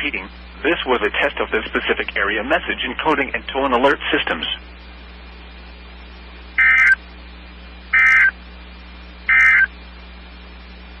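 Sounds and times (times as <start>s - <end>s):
shrill digital warbles: 6.6s - 7.0s, 7.9s - 8.4s, 9.3s - 9.7s.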